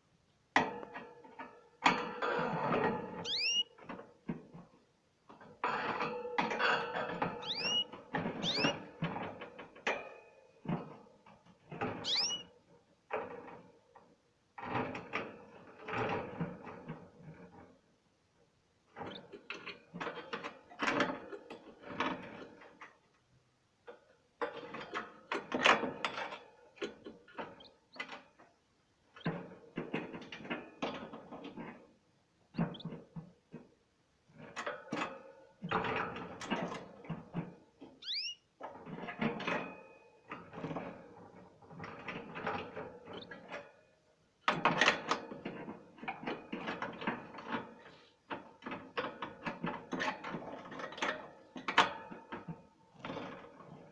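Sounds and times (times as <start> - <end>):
bird chirp: 3.2 - 3.8, 7.3 - 8.9, 12.0 - 12.5, 32.5 - 33.0, 38.0 - 38.5
wings fluttering and splashing: 8.4 - 8.8.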